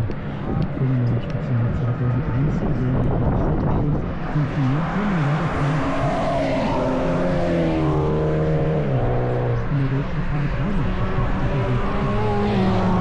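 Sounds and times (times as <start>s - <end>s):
race car engine passing: 1.7s - 13.0s.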